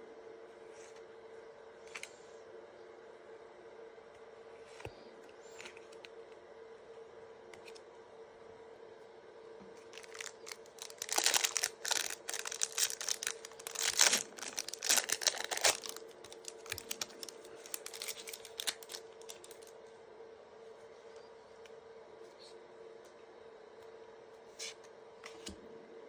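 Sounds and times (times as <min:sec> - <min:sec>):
trading cards crinkling and clicking: 0:09.8 - 0:19.8.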